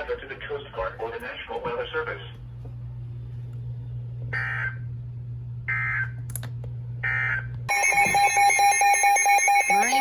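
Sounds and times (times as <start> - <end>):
fast-pulsing electronic alarm: 7.0 - 10.0.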